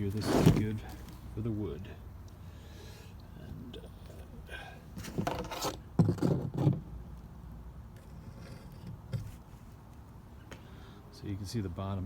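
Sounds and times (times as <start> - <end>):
handling knocks and scrapes: 0.0 - 1.3, 5.0 - 6.8, 8.0 - 9.8.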